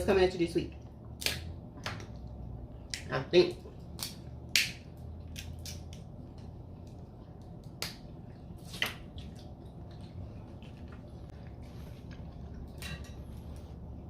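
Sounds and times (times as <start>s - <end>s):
chewing food cracks and clicks: 3.7s - 11.4s.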